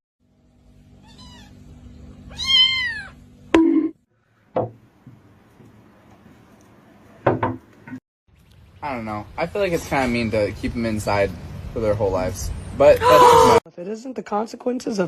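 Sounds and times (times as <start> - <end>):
cat meowing: 1.0 - 1.6, 2.3 - 3.2.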